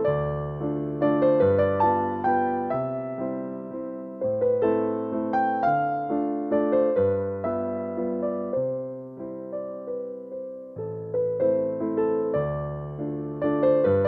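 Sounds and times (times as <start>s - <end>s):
gentle piano music: 0.0s - 14.0s.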